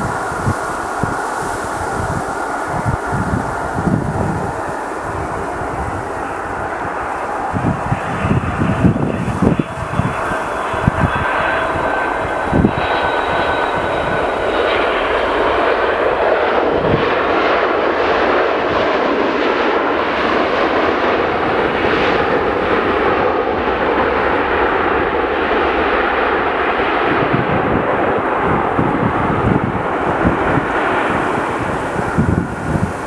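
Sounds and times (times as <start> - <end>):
wind thumping on microphone: 0.0 - 19.5, 26.9 - 33.0
jet engines landing: 0.0 - 33.0.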